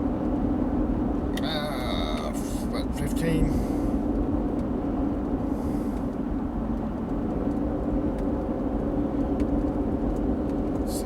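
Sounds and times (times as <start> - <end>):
truck engine and road drone: 0.0 - 11.0.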